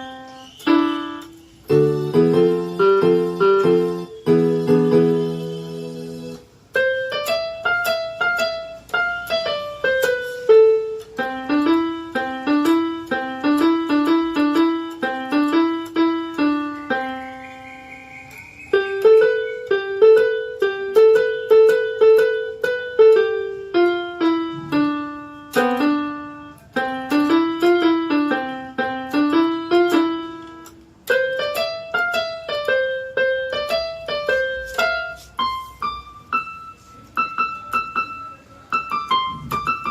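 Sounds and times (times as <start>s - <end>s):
electronic keyboard piano melody: 0.0s - 39.9s.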